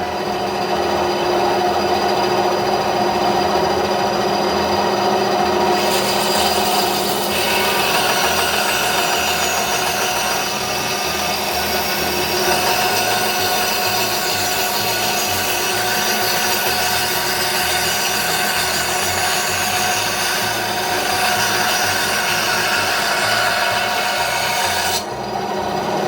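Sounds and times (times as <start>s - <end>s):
bandsaw cutting wood: 5.7s - 25.2s.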